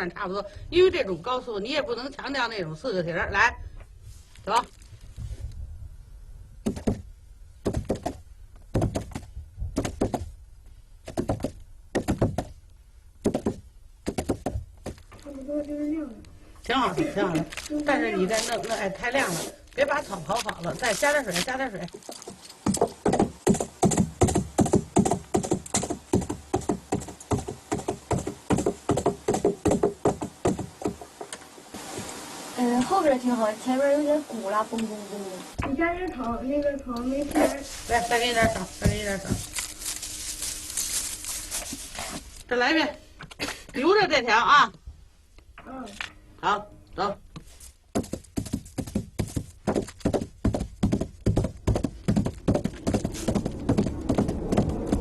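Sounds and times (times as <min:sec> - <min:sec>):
galloping hoofbeats on straw: 0:22.1 - 0:31.0, 0:37.3 - 0:42.2, 0:48.0 - 0:55.0.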